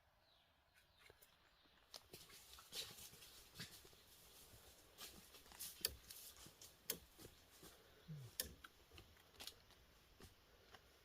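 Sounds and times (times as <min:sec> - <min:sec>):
faint crackles and taps: 0:08.4 - 0:11.0.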